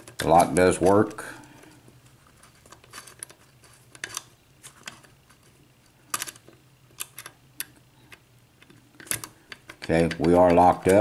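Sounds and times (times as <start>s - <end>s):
key working lock cylinder: 6.1s - 11.0s.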